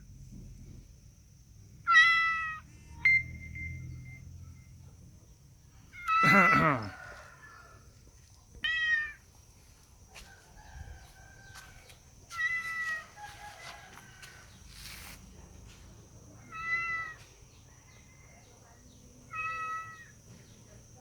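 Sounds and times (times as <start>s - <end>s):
cat meowing: 1.9s - 2.6s, 6.0s - 6.6s, 8.6s - 9.2s, 12.3s - 13.1s, 16.4s - 17.2s, 19.3s - 20.1s.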